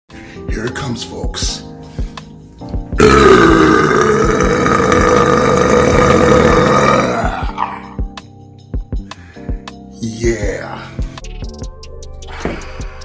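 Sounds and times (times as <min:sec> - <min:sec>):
rough belch-like growl: 0:03.0 - 0:07.6.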